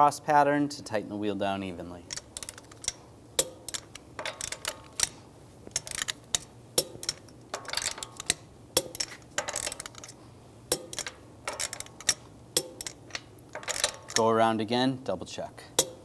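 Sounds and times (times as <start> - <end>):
torque wrench metallic click: 2.1 - 14.3, 15.8 - 16.0
torque wrench ratcheting: 2.1 - 14.3.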